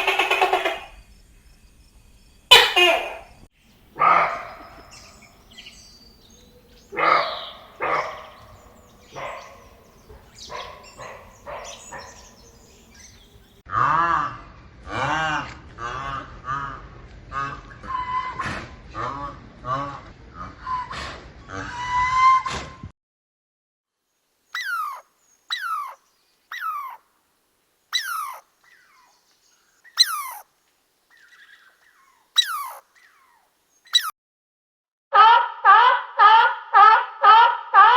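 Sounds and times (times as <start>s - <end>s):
dog barking: 4.0s - 5.0s, 6.9s - 12.8s, 24.6s - 26.0s, 30.0s - 30.4s, 32.4s - 32.8s, 35.2s - 37.9s
animal high calls sliding down: 24.6s - 27.0s, 28.0s - 28.4s, 30.0s - 30.4s, 32.4s - 32.8s, 33.9s - 34.1s.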